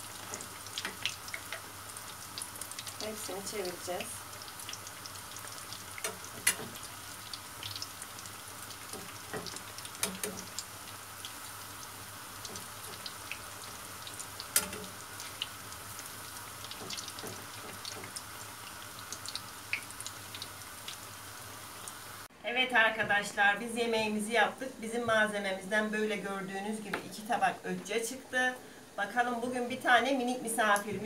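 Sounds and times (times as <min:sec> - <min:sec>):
fritters sizzling in oil: 0:00.0 - 0:22.3
utensil clicking against pan: 0:06.0 - 0:06.8, 0:08.9 - 0:10.6, 0:14.5 - 0:15.0.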